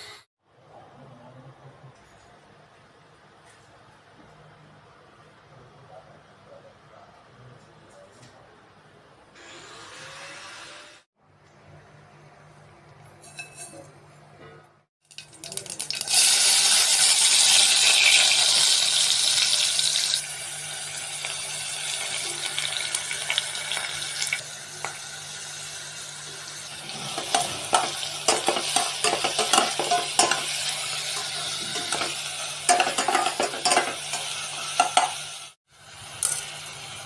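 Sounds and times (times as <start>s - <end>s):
food sizzling in oil: 15.0s - 37.0s.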